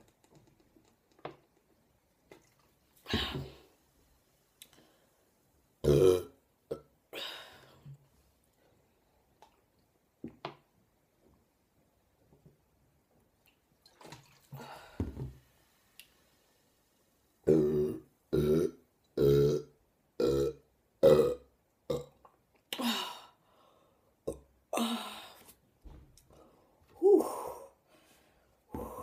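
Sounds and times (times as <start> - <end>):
woman burping loudly: 5.8 - 7.4, 17.4 - 22.2.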